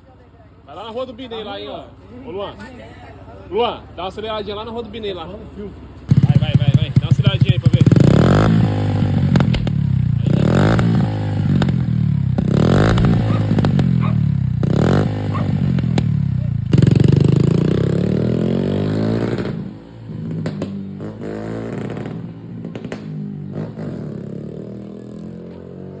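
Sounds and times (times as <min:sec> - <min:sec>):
small motorcycle engine revving: 0:06.1 - 0:26.0.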